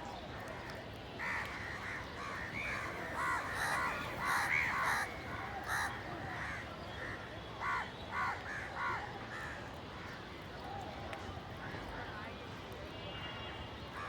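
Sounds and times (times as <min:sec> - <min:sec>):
crows cawing: 0:01.9 - 0:06.0.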